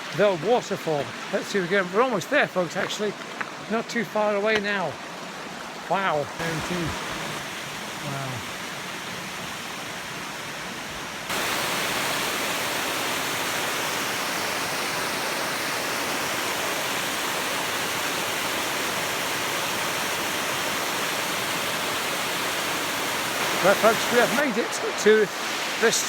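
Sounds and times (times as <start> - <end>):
waterfall rushing: 0.0 - 26.0.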